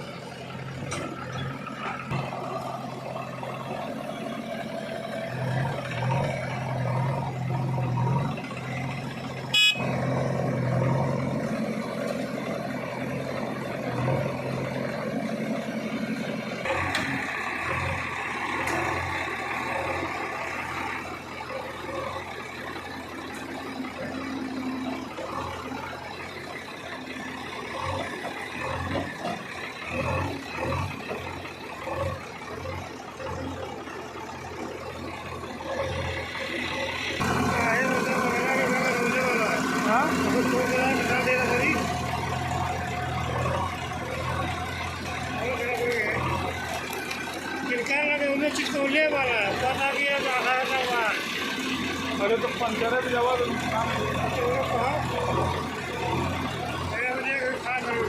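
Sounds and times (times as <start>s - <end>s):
diesel engine running: 0.0s - 58.0s
horn-like higher tone: 9.5s - 9.9s.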